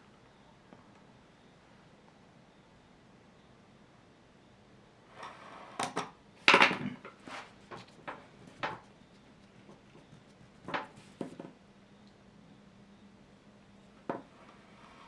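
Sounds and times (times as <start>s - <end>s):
drawing instruments knocking: 9.5s - 11.6s.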